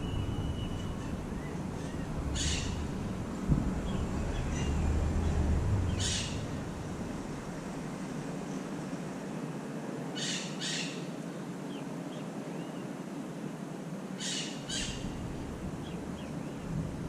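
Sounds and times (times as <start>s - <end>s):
faint bird chirps: 0.0s - 2.9s
harsh bird calls: 0.0s - 7.4s, 14.2s - 16.8s
low rumble: 0.0s - 8.9s, 14.9s - 17.0s.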